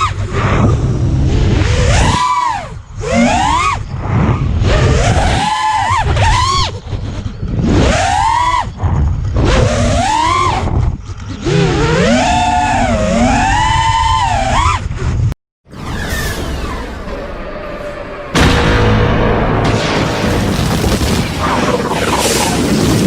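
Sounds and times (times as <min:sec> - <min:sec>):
low wind rumble: 0:00.0 - 0:23.0
quadcopter motors whining: 0:09.6 - 0:14.8.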